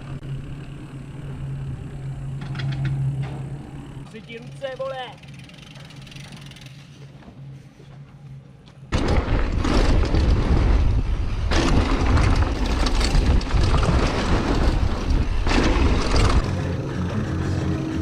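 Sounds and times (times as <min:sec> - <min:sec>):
bike tyre and trail rumble: 0:00.0 - 0:18.0
wind rushing over microphone: 0:08.9 - 0:17.4
music: 0:16.5 - 0:18.0.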